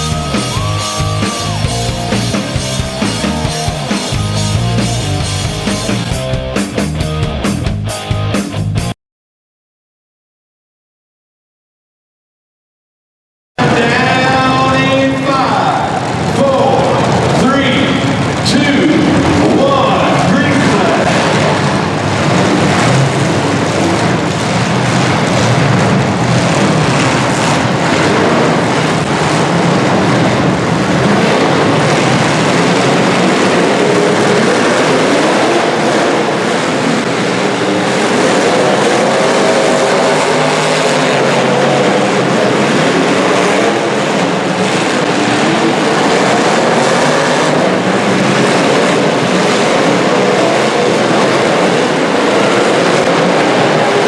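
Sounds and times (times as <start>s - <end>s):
car engines roaring and revving: 0.0s - 8.9s, 13.6s - 54.0s
cars hitting each other: 13.6s - 54.0s.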